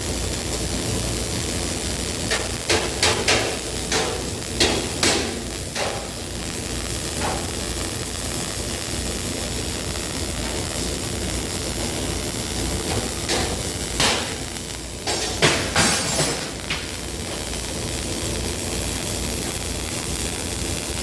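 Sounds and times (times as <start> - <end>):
steady hiss: 0.0 - 21.0
sharp knocks: 12.9 - 14.4.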